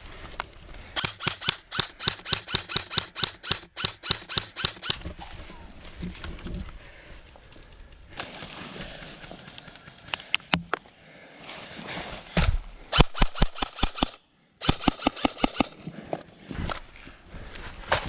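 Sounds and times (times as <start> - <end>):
airsoft gun firing: 1.0 - 5.0, 12.9 - 15.8.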